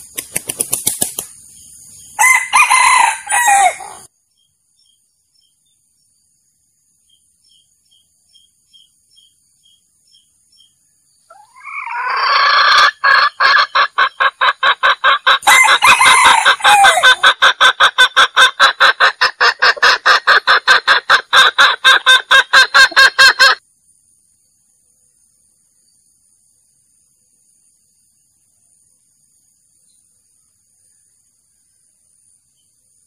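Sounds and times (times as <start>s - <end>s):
rooster pulsing cackle: 2.2s - 4.1s, 11.3s - 23.6s.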